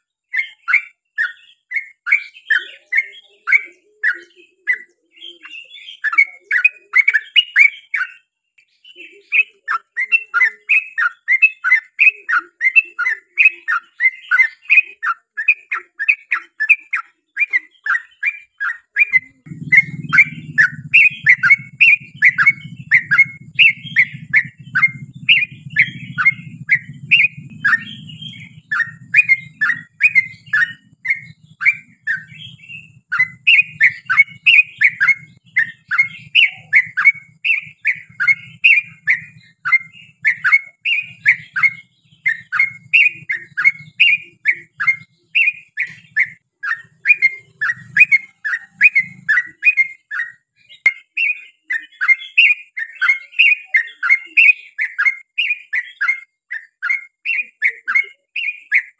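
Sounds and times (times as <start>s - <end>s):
bird chirping song: 0.0s - 58.9s
low hum: 19.5s - 37.4s.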